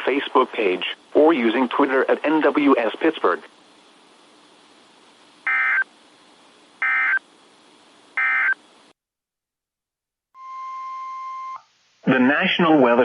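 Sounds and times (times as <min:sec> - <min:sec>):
faint radio hiss: 0:00.0 - 0:09.0, 0:11.6 - 0:13.0
steady single-pitch alert tone: 0:08.2 - 0:08.6.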